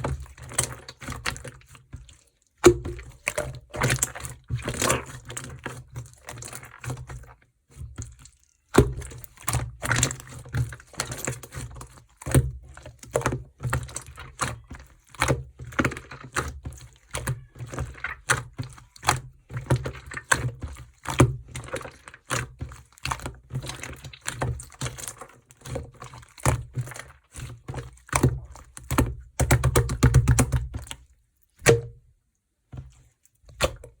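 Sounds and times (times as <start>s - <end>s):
slime squished by hand: 0.0s - 32.1s.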